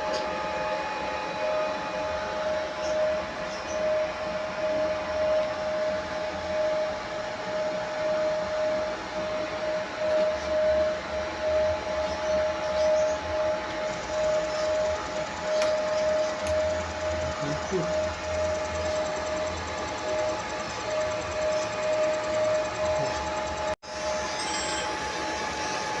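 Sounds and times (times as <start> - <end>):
engraving machine whirring: 7.6 - 26.0.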